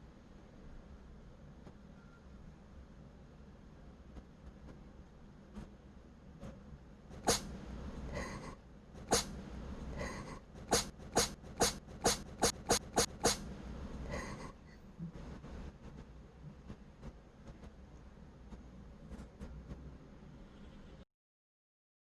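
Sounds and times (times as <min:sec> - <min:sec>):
cat breathing: 0:07.3 - 0:11.2, 0:12.8 - 0:14.8.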